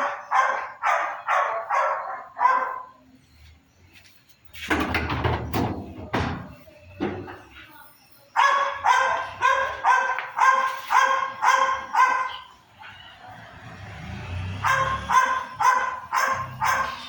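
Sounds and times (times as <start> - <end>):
dog barking high-pitched: 0.0 - 3.0, 8.4 - 13.1, 14.6 - 17.0.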